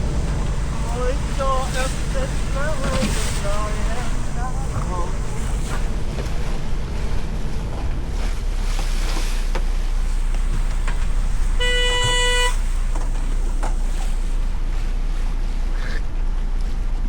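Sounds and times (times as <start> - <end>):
water noise: 0.0 - 15.8
boat engine rumbling: 0.0 - 17.0
wind: 0.0 - 17.0
horn toot: 11.5 - 13.2.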